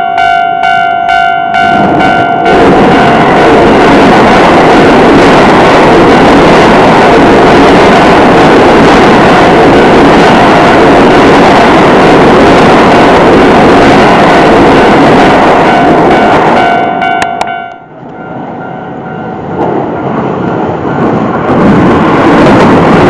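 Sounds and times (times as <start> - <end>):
crossing warning bell ringing: 0.0 - 5.8, 10.6 - 21.4
electric train passing: 0.0 - 23.0.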